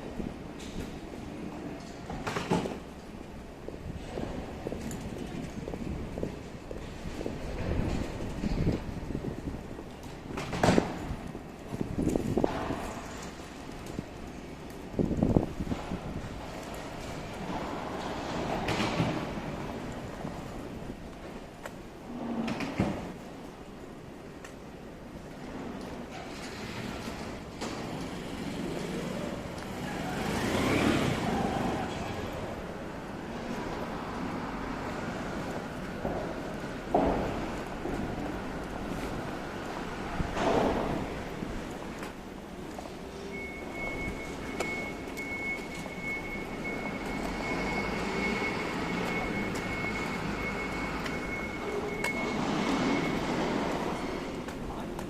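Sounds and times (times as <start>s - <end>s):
town background noise: 0.0s - 55.0s
car passing: 28.2s - 35.8s.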